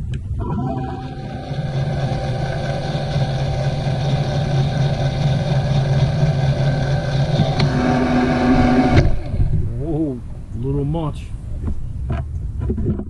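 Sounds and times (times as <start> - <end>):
power caulk gun motor humming: 0.4 - 9.6.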